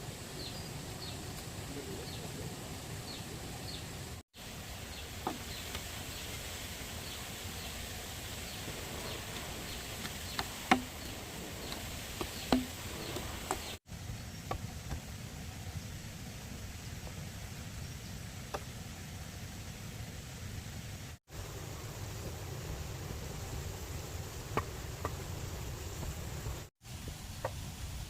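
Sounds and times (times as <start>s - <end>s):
outdoor background hiss: 0.0s - 28.0s
sharp knocks: 10.4s - 10.9s.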